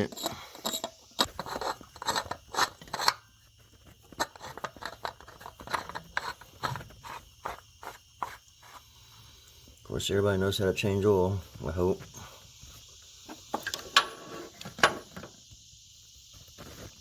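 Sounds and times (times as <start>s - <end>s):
clicks and scrapes of hand work: 0.0s - 8.8s.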